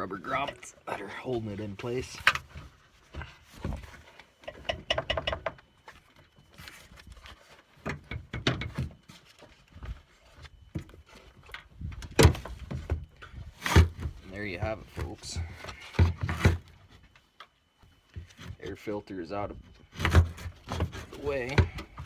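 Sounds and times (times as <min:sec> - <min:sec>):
plastic knocks and rattles: 0:03.6 - 0:05.6.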